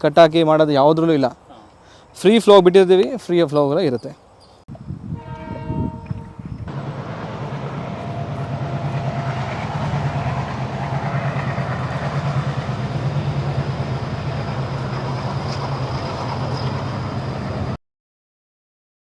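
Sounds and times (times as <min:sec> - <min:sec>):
passing vehicle rumble: 0:06.7 - 0:17.8.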